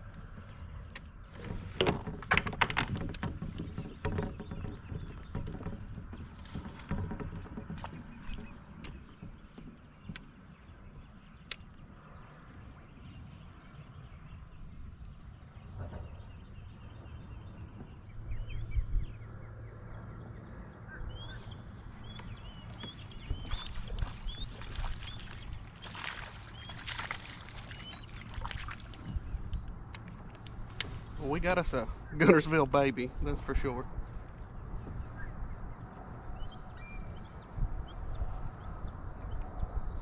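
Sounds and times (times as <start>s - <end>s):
handling knocks and rustles: 1.3s - 10.5s
bird chirping: 7.9s - 40.0s.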